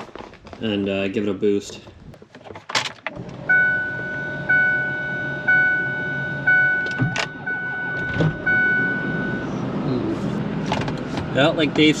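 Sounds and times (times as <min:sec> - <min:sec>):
truck warning chime: 0:03.5 - 0:09.6.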